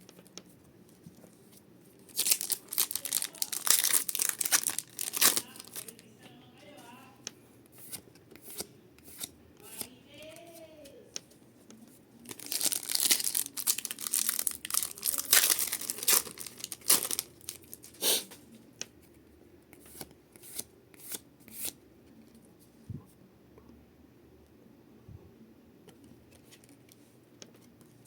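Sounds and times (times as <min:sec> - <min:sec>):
foil pack ripping and crinkling: 0:02.1 - 0:06.0, 0:12.2 - 0:18.0.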